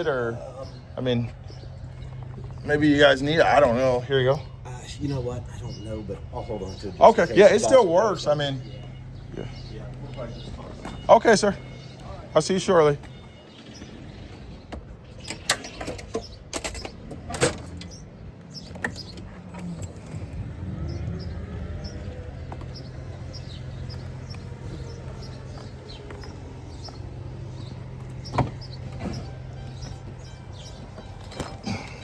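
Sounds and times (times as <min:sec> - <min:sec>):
car engine starting and idling: 0:00.0 - 0:32.0
vehicle door clicks and knocks: 0:27.9 - 0:32.0.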